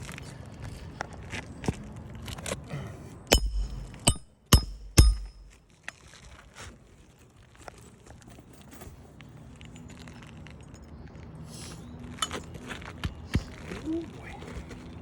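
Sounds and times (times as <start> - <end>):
low steady hum: 3.2 - 5.7.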